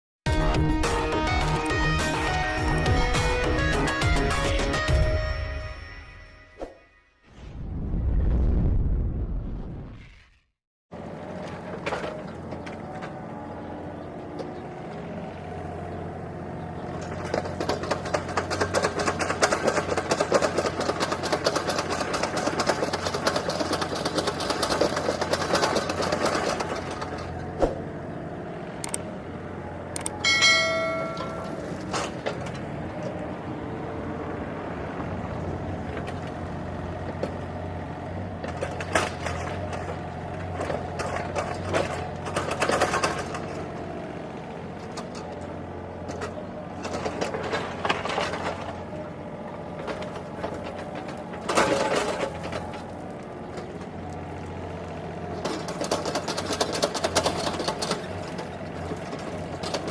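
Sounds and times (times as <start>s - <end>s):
excavator diesel engine running: 0.3s - 5.3s, 11.0s - 59.9s.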